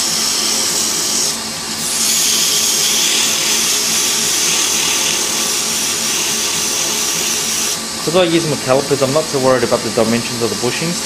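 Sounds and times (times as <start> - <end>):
sandpaper hissing on spinning wood: 0.0 - 8.3
lathe motor hum: 0.0 - 11.0.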